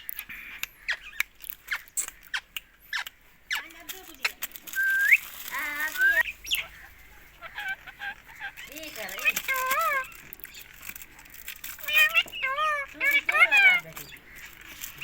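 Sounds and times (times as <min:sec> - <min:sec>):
parrot chirping and whistling: 0:04.7 - 0:05.2, 0:05.8 - 0:06.7.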